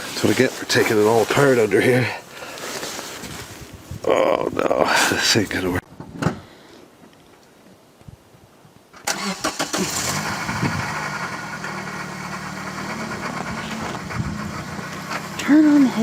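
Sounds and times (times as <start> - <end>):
car engine starting and idling: 9.0 - 16.0.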